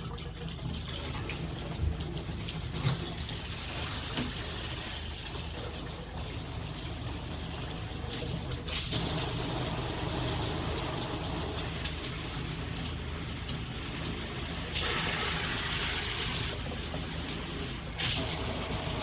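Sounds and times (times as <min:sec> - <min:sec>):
shower head spraying water: 0:07.3 - 0:19.0.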